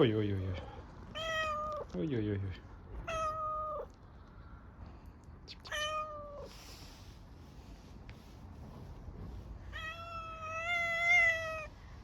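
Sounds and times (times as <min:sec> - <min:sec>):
cat meowing: 0:01.1 - 0:01.9, 0:03.0 - 0:04.0, 0:05.6 - 0:06.6, 0:09.7 - 0:11.8.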